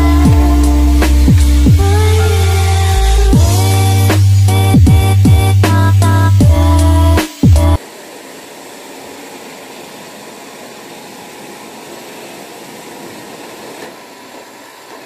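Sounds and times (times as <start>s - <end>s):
robot floor cleaner whirring: 7.7s - 15.0s.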